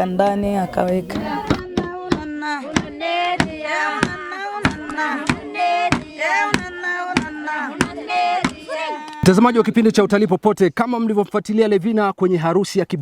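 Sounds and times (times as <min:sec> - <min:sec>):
voices chanting: 0:00.0 - 0:09.7.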